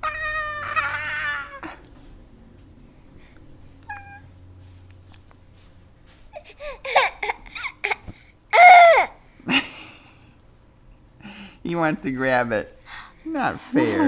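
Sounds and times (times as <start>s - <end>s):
baby squealing and babbling: 0.0s - 1.8s, 6.4s - 9.2s.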